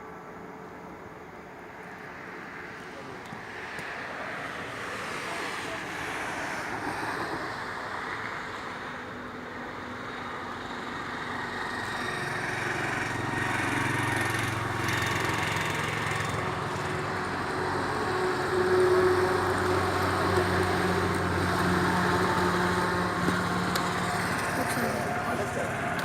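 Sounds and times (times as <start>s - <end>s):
engine humming: 10.3s - 26.0s.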